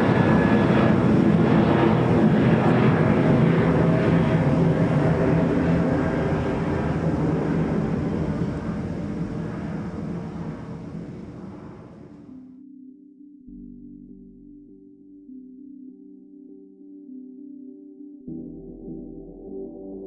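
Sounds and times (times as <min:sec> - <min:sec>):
jet engines roaring overhead: 0:00.0 - 0:12.2.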